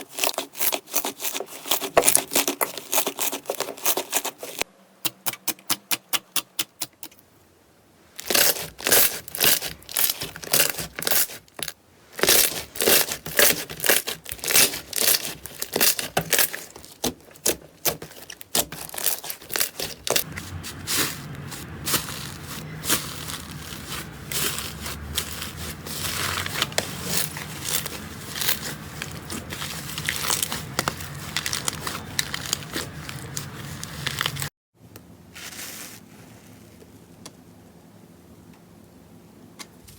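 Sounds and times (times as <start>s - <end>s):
crunchy slime crackling: 0.0s - 4.6s, 8.1s - 34.5s.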